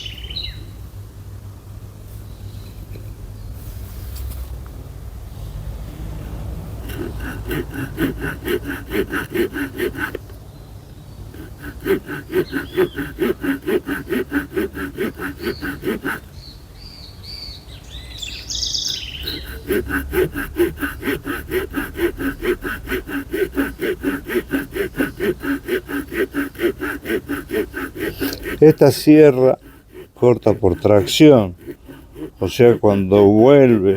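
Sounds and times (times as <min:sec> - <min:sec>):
bird chirping: 0:00.0 - 0:00.8, 0:16.3 - 0:19.4
small saw cutting a log: 0:06.7 - 0:10.3, 0:11.3 - 0:16.4, 0:18.7 - 0:33.9.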